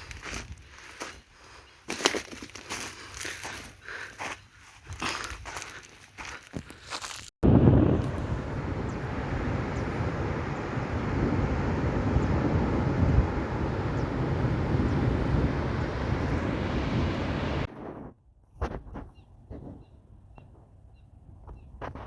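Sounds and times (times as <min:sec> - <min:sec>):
loud rushing noise: 0:07.4 - 0:17.7.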